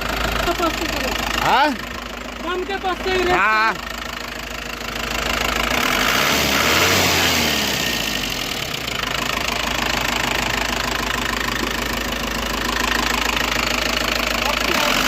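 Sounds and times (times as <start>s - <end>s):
car engine revving and idling: 0.0s - 15.0s.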